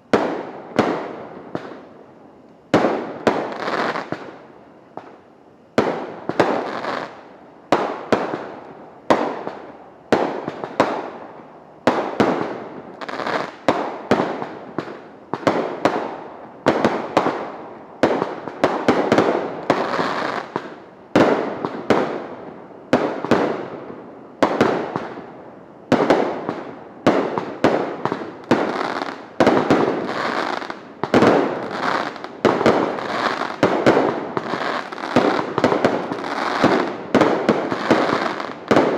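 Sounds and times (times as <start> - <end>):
fireworks bangs: 11.8 - 38.9.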